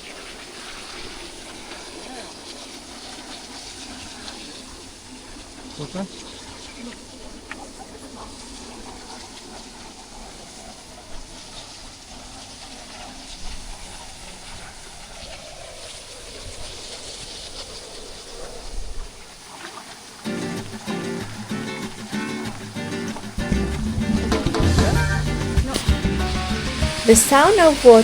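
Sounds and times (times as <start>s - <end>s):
waterfall rushing: 20.2s - 28.0s.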